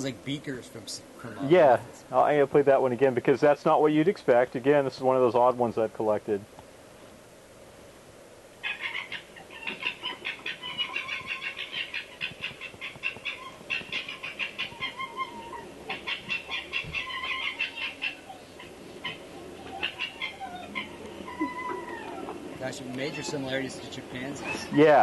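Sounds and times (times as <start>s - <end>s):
foxes chattering: 8.6s - 25.0s.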